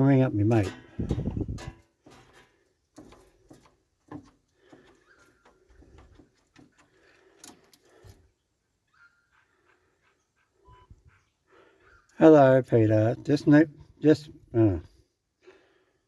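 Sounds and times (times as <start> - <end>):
faint short beeps: 10.6 - 11.2.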